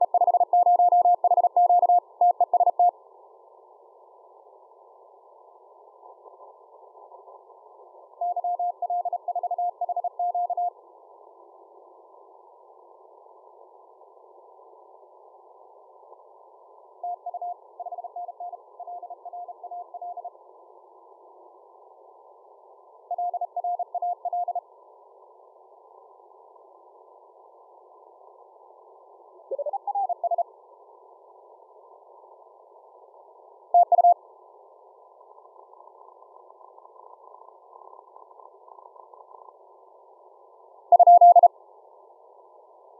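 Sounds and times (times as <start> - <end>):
receiver hiss: 0.0 - 42.9
morse code tone: 41.0 - 41.5.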